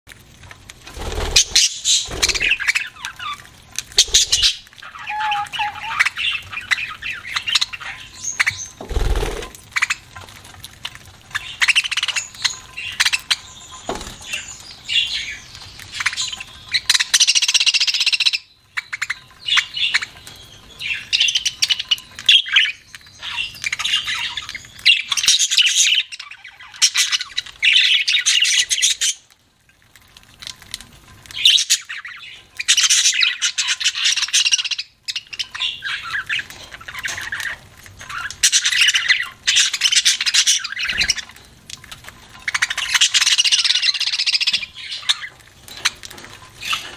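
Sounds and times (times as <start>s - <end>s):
budgerigars chirping and squawking: 0.9s - 10.2s, 11.2s - 29.3s, 31.3s - 46.9s.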